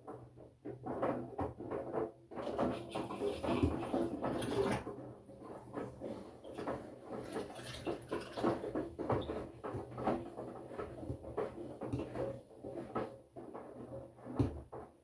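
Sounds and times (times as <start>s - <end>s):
wet laundry swishing in drum: 2.4s - 12.9s.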